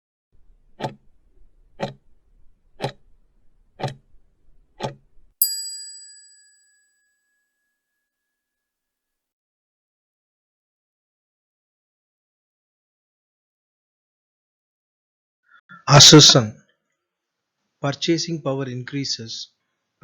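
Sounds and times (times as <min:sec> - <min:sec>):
clock ticks: 0:00.8 - 0:01.0, 0:01.8 - 0:02.0, 0:02.8 - 0:03.0, 0:03.8 - 0:04.0, 0:04.8 - 0:05.0
bell ding: 0:05.4 - 0:07.2.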